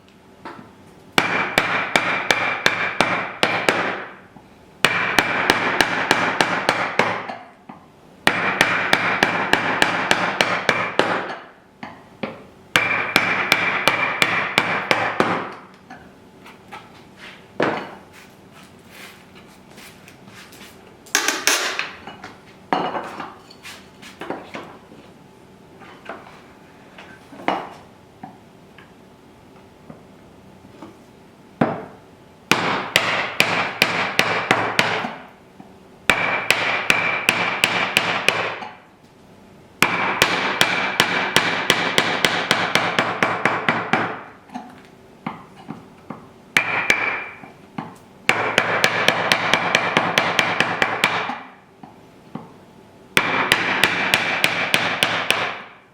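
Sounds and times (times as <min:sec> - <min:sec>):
hand tool strokes on wood: 0:17.2 - 0:17.5, 0:18.1 - 0:20.8, 0:23.5 - 0:24.2.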